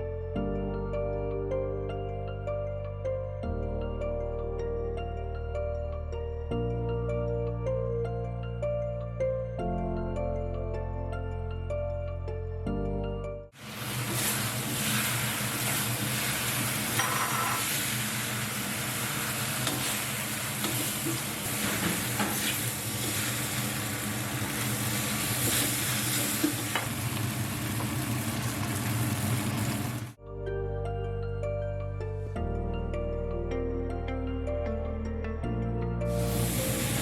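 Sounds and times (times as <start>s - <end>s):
background music: 0.0s - 13.6s, 30.2s - 37.0s
food sizzling in a wok: 13.6s - 30.2s, 36.1s - 37.0s
metal spatula scraping a pan: 13.9s - 17.9s.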